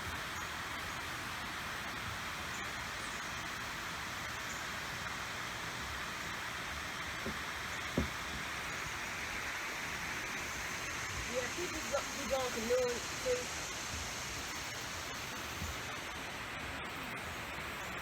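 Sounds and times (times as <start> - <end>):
dull thump: 7.2 - 8.5.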